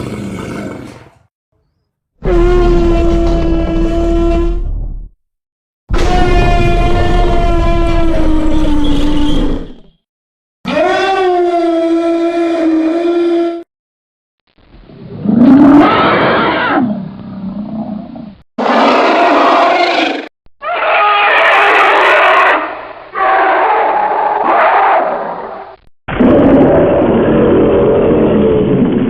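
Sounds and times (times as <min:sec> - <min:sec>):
monster roars and growls: 0:00.0 - 0:01.2, 0:02.2 - 0:04.9, 0:05.9 - 0:09.7, 0:15.2 - 0:29.0.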